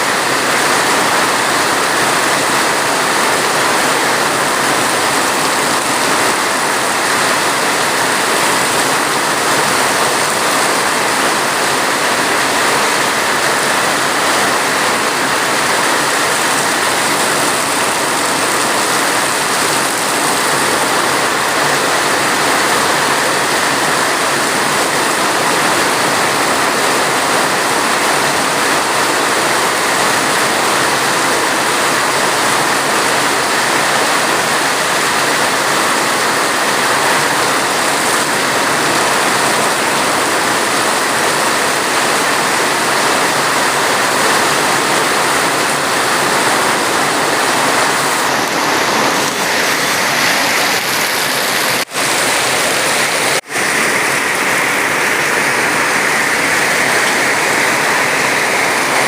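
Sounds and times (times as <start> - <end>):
heavy rain: 0.0 - 59.0.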